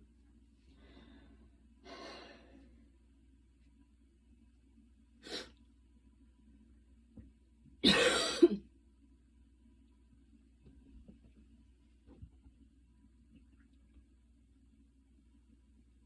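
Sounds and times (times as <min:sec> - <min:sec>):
faint breath: 0:00.6 - 0:02.8
woman coughing: 0:07.8 - 0:08.7.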